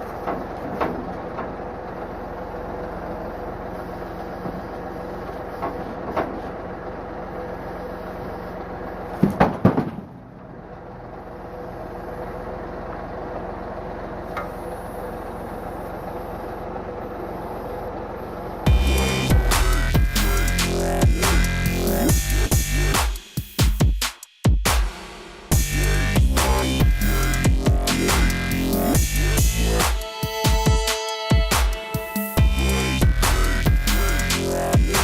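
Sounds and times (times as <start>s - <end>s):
heavy machinery humming: 0.0s - 23.0s, 25.4s - 35.0s
machinery knocks: 9.2s - 10.2s.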